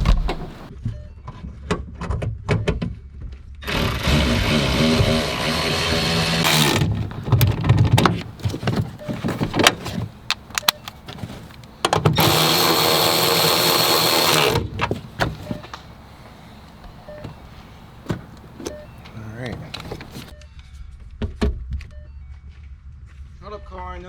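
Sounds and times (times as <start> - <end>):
power drill running: 3.6 - 7.3, 12.2 - 14.7
clicks and knocks of handling parts: 6.4 - 15.9, 16.6 - 20.3.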